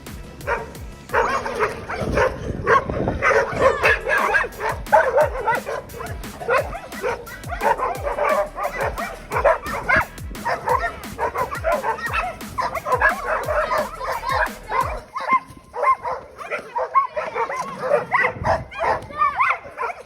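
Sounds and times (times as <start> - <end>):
music: 0.0 - 16.4
dog barking and yelping: 0.5 - 20.0.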